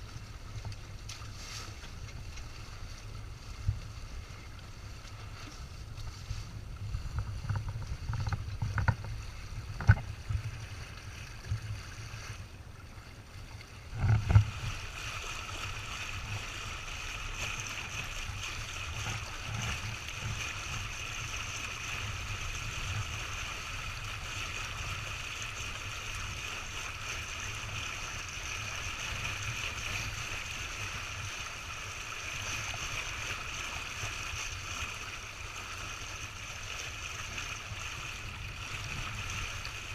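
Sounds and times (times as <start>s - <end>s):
water rushing along a hull: 0.0s - 39.9s
wind buffeting microphone: 5.6s - 11.8s.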